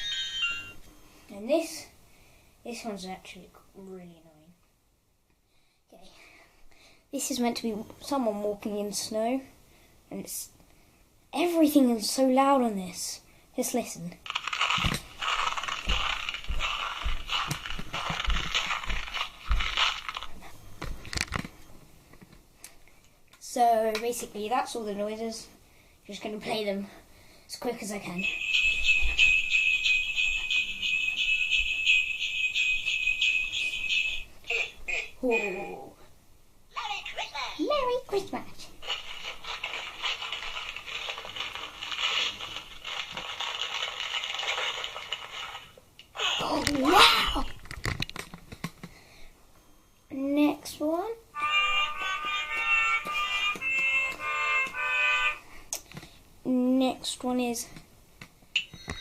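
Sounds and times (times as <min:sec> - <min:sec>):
wrapping paper tearing and rustling: 0:14.2 - 0:20.5, 0:38.8 - 0:45.8
footsteps crunching in snow: 0:14.4 - 0:20.4.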